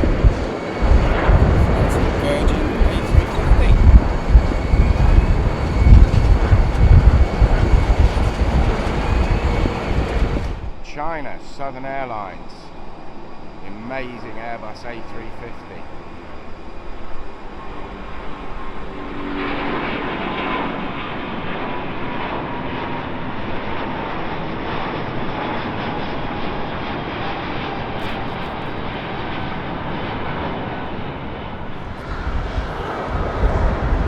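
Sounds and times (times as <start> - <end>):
deep rumble: 0.0 - 10.8, 31.7 - 34.0
jet airliner passing: 0.0 - 34.0.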